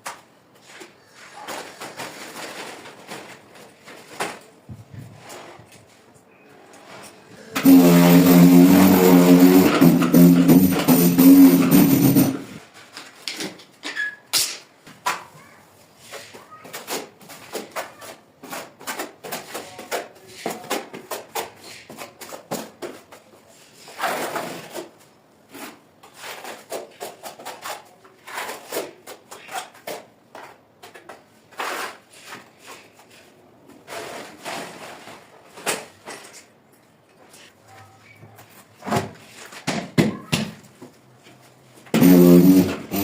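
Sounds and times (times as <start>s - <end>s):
scrape or rustle: 0.6s - 13.2s, 15.8s - 16.7s, 23.4s - 36.5s, 37.2s - 39.6s.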